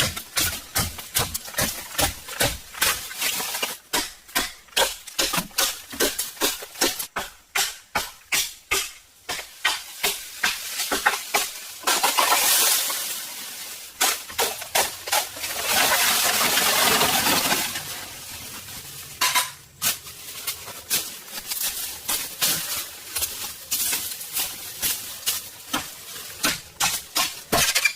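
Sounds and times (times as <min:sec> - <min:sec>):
cookware and utensils clattering: 0:19.1 - 0:19.8.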